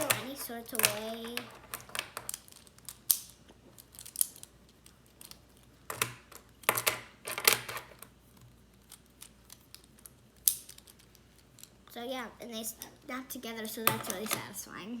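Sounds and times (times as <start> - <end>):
plastic cube blocks clicking: 0.0 - 8.1, 8.7 - 11.8, 13.8 - 14.4.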